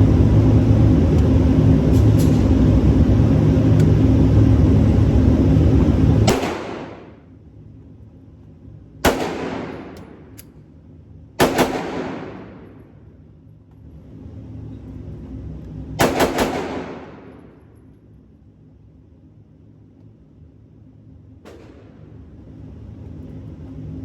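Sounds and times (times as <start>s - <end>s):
steady low rumble: 0.0s - 24.0s
pistol shots echoing: 6.3s - 7.2s, 9.0s - 10.3s, 11.4s - 12.7s, 16.0s - 17.5s.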